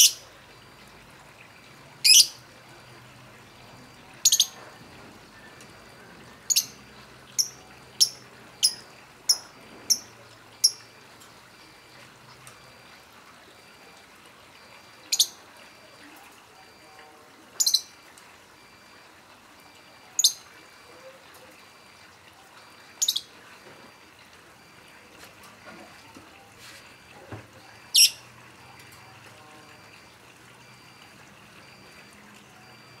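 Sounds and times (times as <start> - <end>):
lovebird shrill calls: 0.0 - 0.2, 2.0 - 2.4, 4.2 - 4.6, 6.5 - 6.8, 7.4 - 10.8, 23.0 - 23.3, 27.9 - 28.2.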